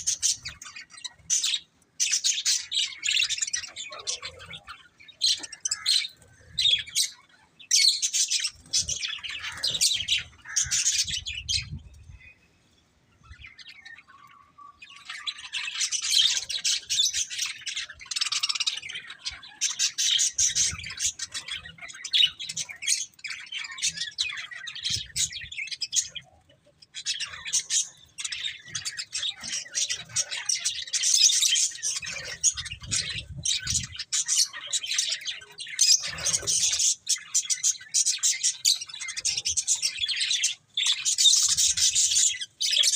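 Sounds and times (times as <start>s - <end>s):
budgerigars chattering: 26.9s - 42.9s.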